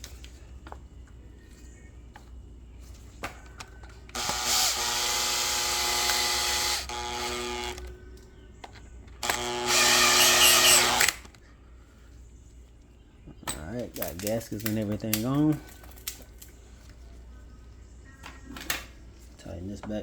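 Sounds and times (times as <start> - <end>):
cordless drill running: 4.1 - 7.9, 9.2 - 11.2.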